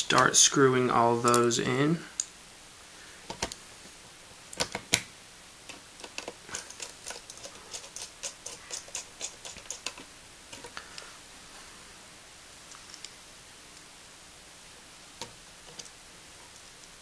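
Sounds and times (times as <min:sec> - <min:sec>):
screws turning metal ticks: 0:06.0 - 0:10.7.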